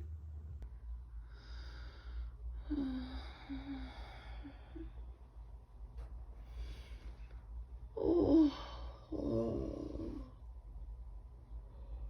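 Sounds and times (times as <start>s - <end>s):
low steady hum: 0.0s - 12.0s
soft breathing exhalations: 6.3s - 7.5s.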